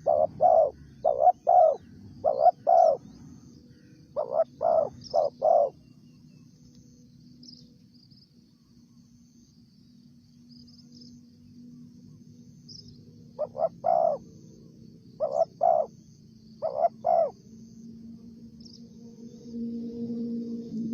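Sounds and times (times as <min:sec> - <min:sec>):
dove cooing: 0:00.0 - 0:03.4, 0:04.1 - 0:05.8, 0:13.3 - 0:14.3, 0:15.2 - 0:16.0, 0:16.6 - 0:17.4.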